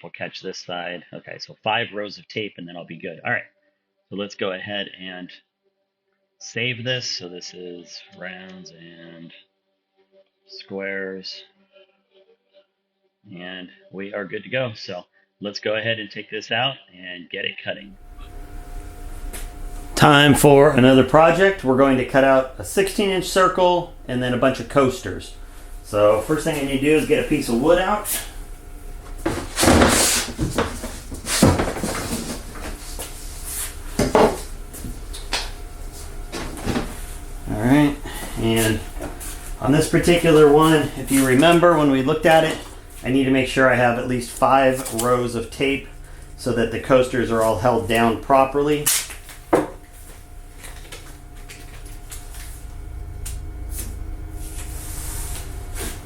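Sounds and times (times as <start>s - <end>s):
steady low hum: 17.9s - 56.0s
wooden board sliding scrape: 29.2s - 34.2s
wooden board knocking: 34.0s - 34.4s, 49.5s - 49.8s
tape ripping off roll: 48.9s - 49.5s.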